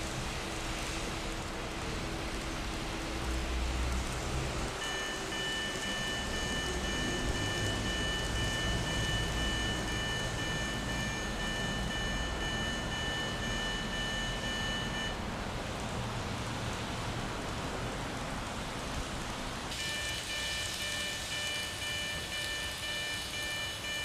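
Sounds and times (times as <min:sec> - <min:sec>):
level crossing warning tones: 0:04.7 - 0:15.2, 0:19.7 - 0:24.0
steady hiss: 0:14.8 - 0:24.0.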